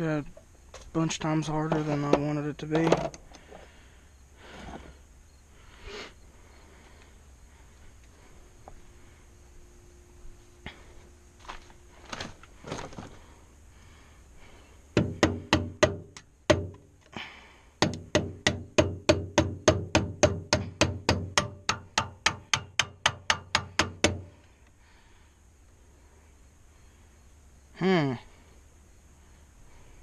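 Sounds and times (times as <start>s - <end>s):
hammer blows on metal: 17.8s - 24.4s.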